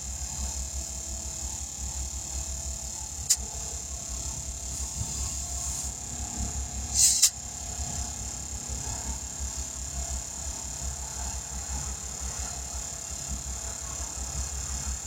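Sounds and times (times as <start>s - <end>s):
air compressor running: 0.0s - 15.0s
sharp click: 3.2s - 3.5s, 7.0s - 7.4s
short hiss of air: 6.9s - 7.4s.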